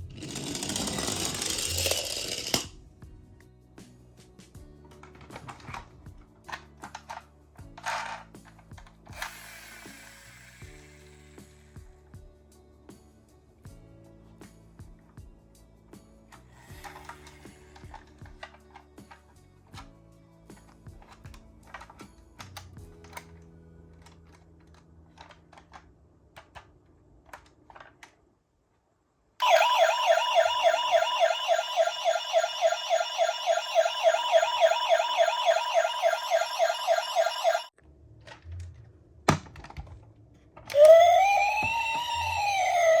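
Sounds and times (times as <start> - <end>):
toy ambulance electronic siren: 0.3 - 2.6, 29.4 - 37.7, 40.7 - 43.0.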